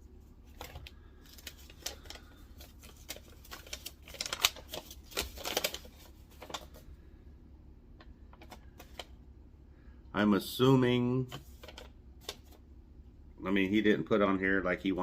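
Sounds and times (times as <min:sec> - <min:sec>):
cards and paper rustling: 0:00.4 - 0:06.9, 0:08.3 - 0:09.2, 0:11.2 - 0:12.6.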